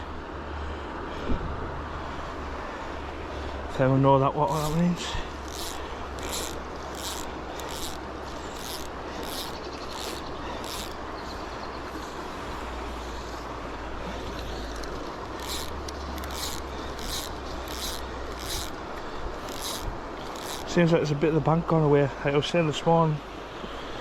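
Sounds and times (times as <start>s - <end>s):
river water rushing: 0.0s - 22.3s.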